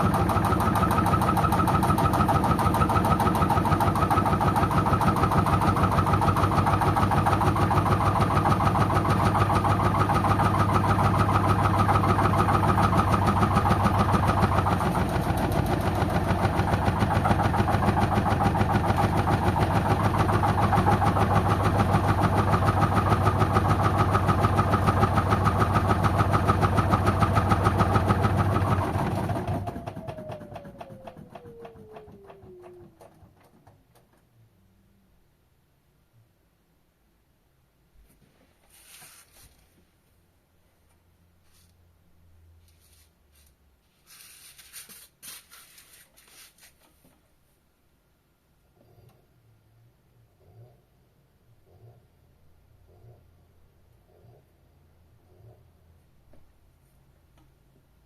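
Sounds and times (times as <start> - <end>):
washing machine drum spinning: 0.0 - 34.1.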